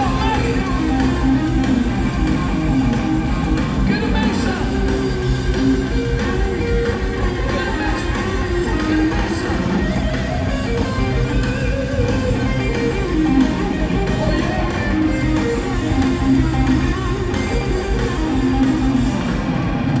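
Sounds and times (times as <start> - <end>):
electric guitar: 0.0 - 20.0
rock band playing: 0.0 - 20.0.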